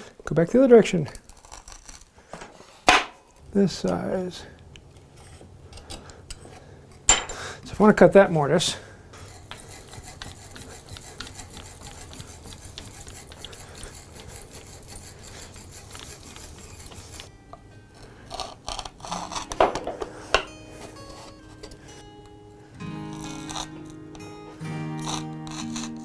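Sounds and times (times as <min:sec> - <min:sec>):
music: 0:17.3 - 0:26.0.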